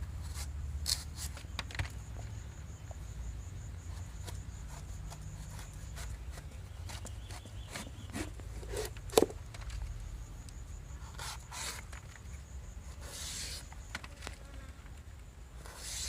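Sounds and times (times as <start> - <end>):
knife scraping swishes: 15.6 - 16.0.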